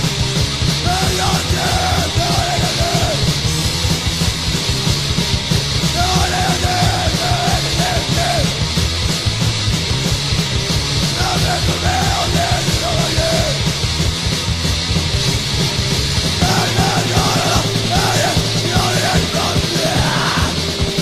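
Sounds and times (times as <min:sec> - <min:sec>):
fast punk drums and guitar: 0:00.0 - 0:21.0
shouted vocals: 0:00.8 - 0:03.2, 0:05.9 - 0:08.5, 0:11.2 - 0:13.6, 0:16.4 - 0:20.7.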